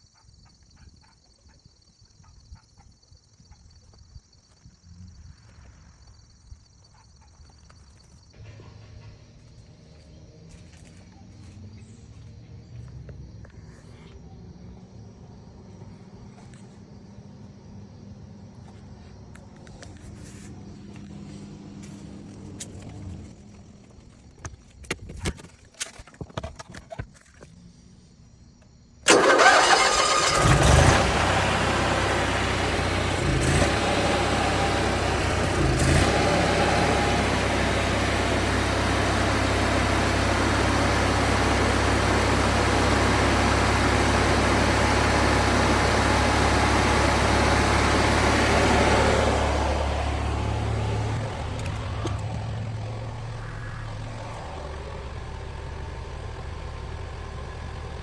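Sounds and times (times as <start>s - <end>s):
generator running with low hum: 7.9s - 24.4s, 29.0s - 58.0s.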